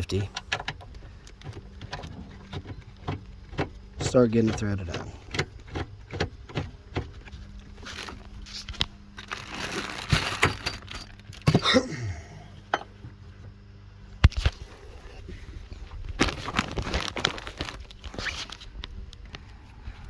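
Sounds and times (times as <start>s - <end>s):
metal hardware clicks and knocks: 0.1s - 7.1s, 9.5s - 11.8s
rustling: 6.8s - 11.1s, 15.2s - 18.8s.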